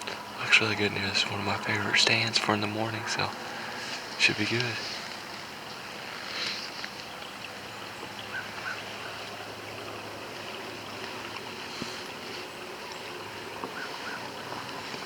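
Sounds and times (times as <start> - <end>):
steady outdoor hiss: 0.0 - 15.0.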